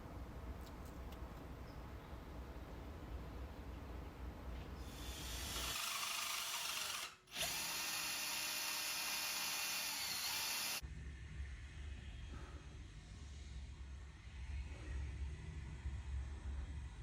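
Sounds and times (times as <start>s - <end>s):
power tool whirring: 4.8s - 10.8s.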